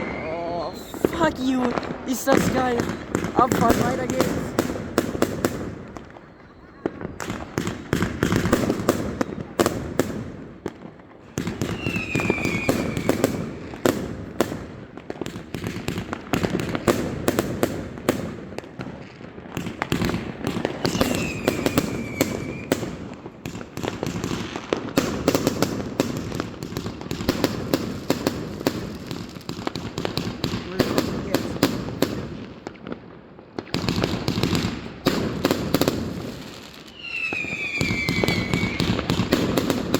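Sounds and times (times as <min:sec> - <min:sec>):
falling whistle: 0:00.0 - 0:01.0, 0:11.8 - 0:13.2, 0:36.9 - 0:38.9
fireworks bangs and crackling: 0:00.0 - 0:39.9.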